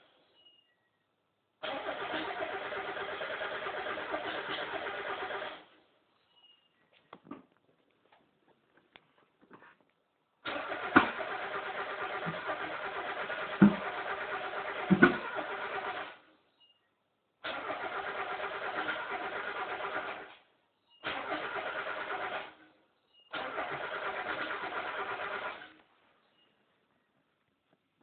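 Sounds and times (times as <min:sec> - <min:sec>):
car engine cranking without starting: 0:01.6 - 0:05.7, 0:10.4 - 0:16.2, 0:17.4 - 0:20.4, 0:21.0 - 0:22.6, 0:23.3 - 0:25.8.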